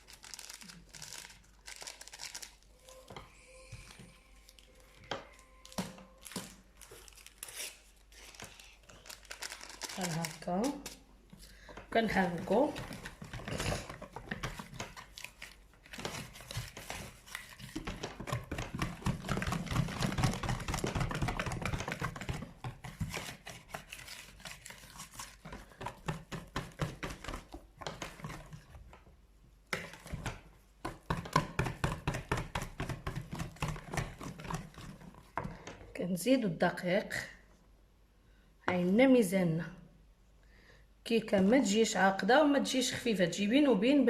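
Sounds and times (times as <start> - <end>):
utensil scraping mixing bowl: 11.9 - 28.8, 30.9 - 35.6.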